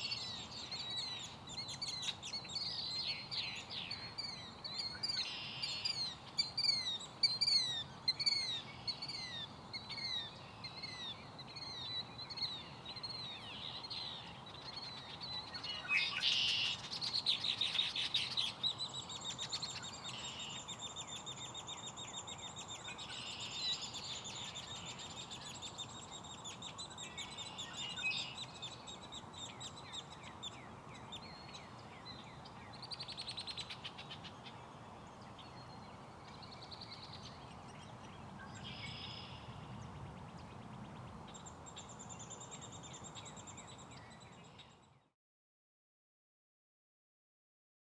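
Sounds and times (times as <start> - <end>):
killdeer calling: 0.0 - 34.7.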